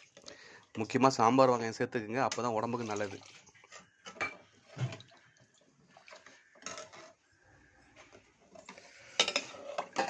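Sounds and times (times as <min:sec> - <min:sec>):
metal utensils clattering against pot: 0:02.2 - 0:05.1, 0:06.5 - 0:07.2, 0:08.0 - 0:10.0.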